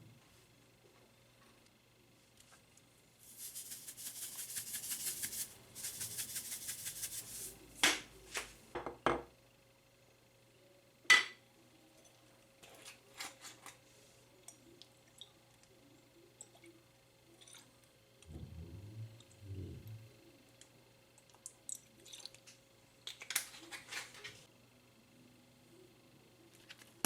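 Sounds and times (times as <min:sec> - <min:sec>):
fast rattling or scraping: 0:03.2 - 0:07.6.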